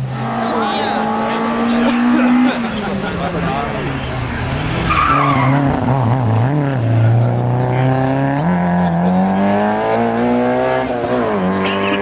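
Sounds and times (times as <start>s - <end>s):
car engine revving hard: 0.0s - 12.0s.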